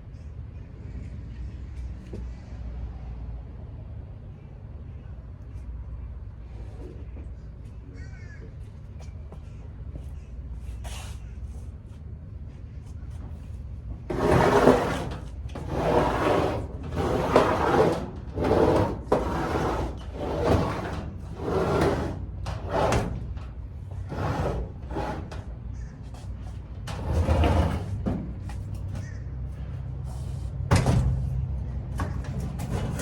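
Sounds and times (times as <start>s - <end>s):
appliance scraping along floor: 14.1s - 25.9s, 26.8s - 28.6s.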